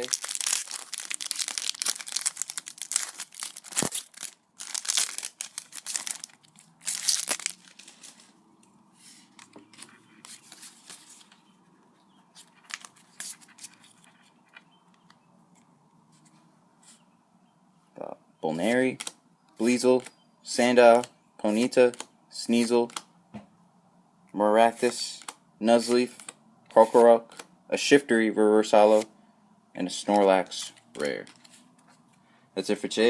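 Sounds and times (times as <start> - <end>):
foil pack tearing and crinkling: 0.0 - 8.2.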